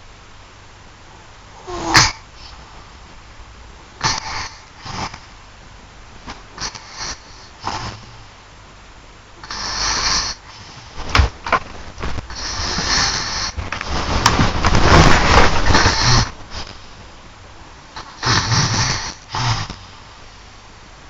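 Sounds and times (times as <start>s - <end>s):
person snoring: 12.3s - 13.6s, 15.6s - 16.7s, 18.0s - 19.9s.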